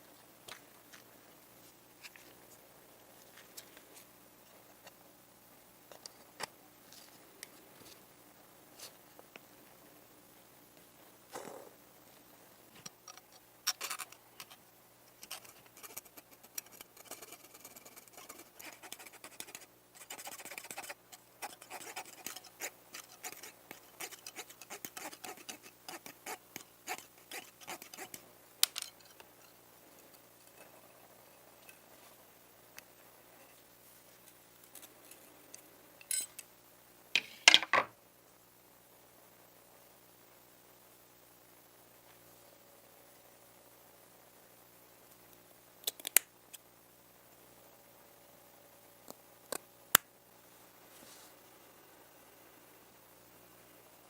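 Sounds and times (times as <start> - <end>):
toy car parts scratching and clicking: 13.1 - 14.6, 15.2 - 29.3.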